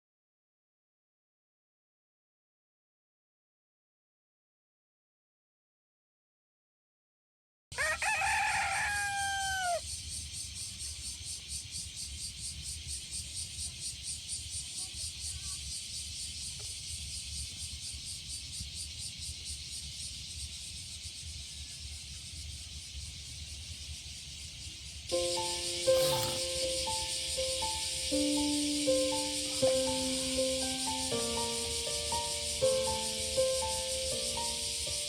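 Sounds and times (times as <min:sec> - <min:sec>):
high fluttering hiss: 0:08.8 - 0:35.0
long bird call: 0:25.1 - 0:35.0.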